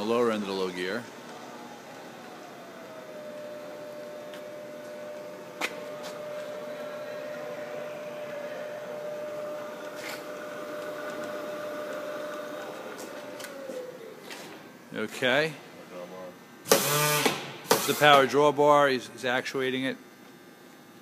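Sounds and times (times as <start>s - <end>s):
milling machine spindle whine: 0.0s - 19.9s.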